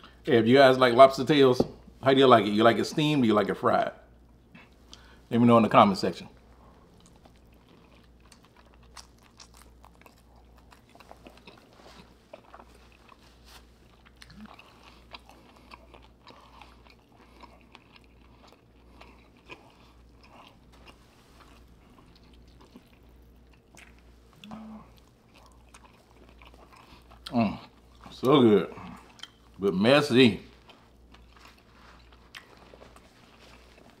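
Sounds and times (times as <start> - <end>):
steady low hum: 0.0 - 34.0
person chewing and biting food: 6.7 - 29.6, 30.5 - 34.0.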